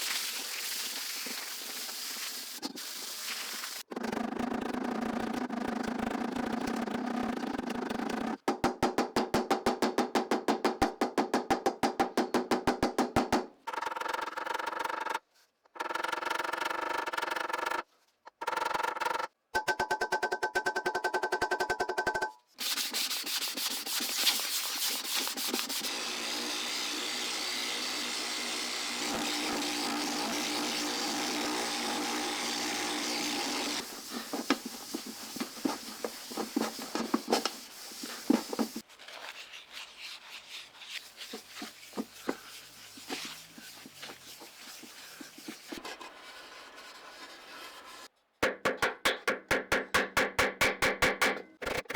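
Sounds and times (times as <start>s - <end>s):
hand sanding scrape: 22.6s - 48.1s.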